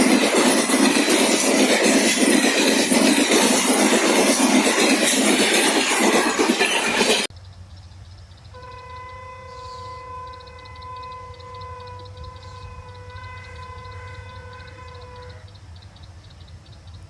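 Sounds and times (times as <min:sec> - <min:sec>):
train wheels clattering: 0:00.0 - 0:07.3.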